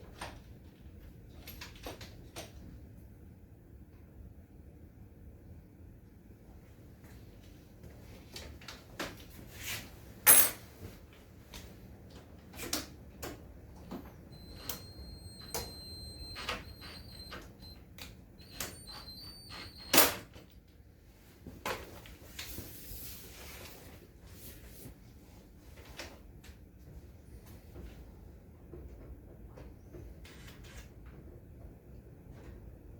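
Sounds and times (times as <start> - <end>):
thin high whine: 13.9 - 20.2.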